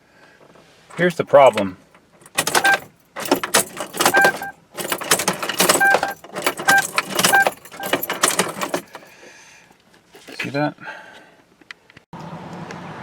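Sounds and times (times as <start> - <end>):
starter clicking: 0.9 - 9.0
key ring jangling: 0.9 - 9.1
short beeps: 4.0 - 4.6.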